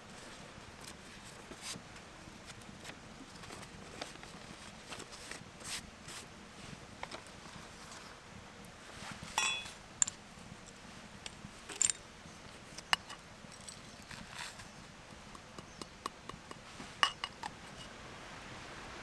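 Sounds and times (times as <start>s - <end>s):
low steady background noise: 0.0s - 19.0s
sharp clicks and light clinks: 9.4s - 12.1s, 12.8s - 14.7s.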